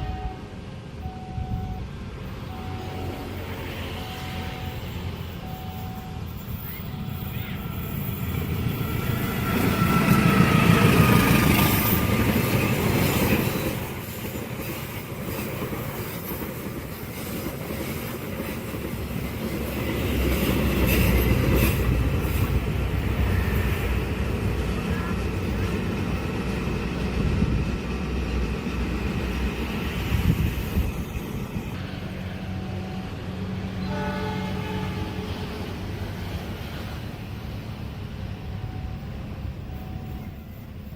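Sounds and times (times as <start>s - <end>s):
train horn blowing: 0.0s - 1.8s, 31.8s - 35.8s
train rumbling and clattering on track: 0.0s - 40.9s.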